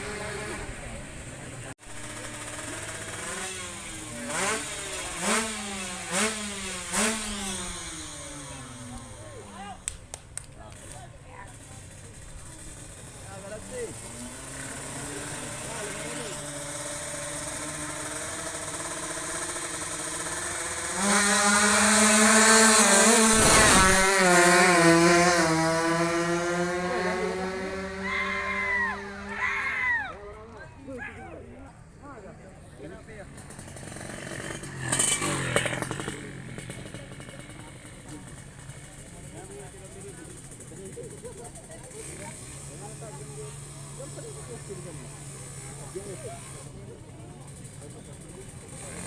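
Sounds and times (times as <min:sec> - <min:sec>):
two-stroke engine revving: 0:00.0 - 0:10.0, 0:10.6 - 0:29.6, 0:32.7 - 0:49.0
engines droning: 0:00.0 - 0:49.0
rushing burst: 0:19.9 - 0:26.0.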